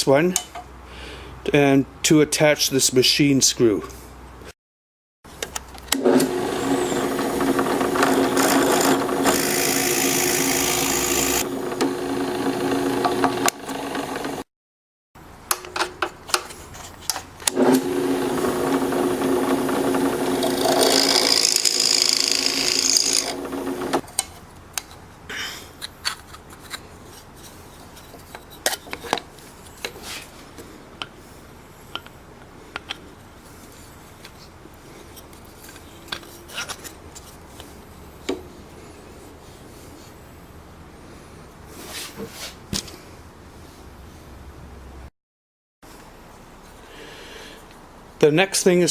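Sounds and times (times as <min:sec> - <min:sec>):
electric drill boring holes: 0:06.0 - 0:14.5, 0:17.5 - 0:24.0
clicks and rubbing of parts: 0:15.5 - 0:17.5, 0:23.9 - 0:25.1, 0:25.8 - 0:30.3, 0:31.9 - 0:33.1, 0:34.2 - 0:38.5.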